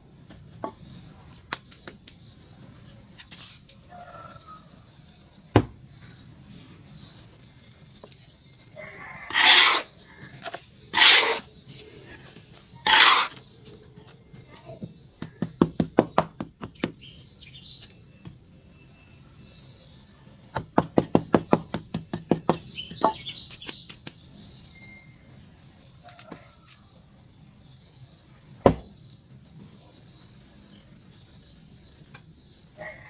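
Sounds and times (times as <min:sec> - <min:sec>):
charcoal rasping: 0:09.3 - 0:13.4.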